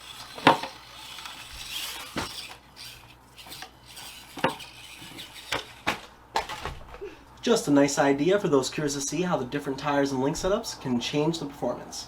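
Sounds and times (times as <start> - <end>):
light scraping and rubbing: 0.0 - 5.8.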